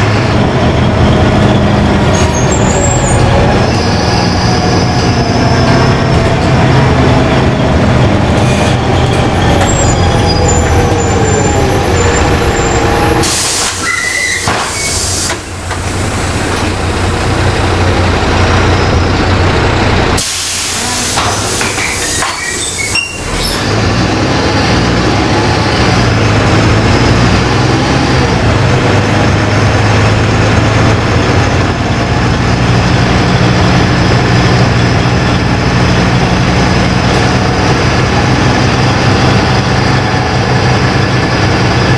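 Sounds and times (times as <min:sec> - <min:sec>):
bus drivetrain whine: 0:00.0 - 0:41.9
bus engine running: 0:00.0 - 0:41.9
compressed air hiss: 0:13.2 - 0:15.5, 0:20.2 - 0:22.9.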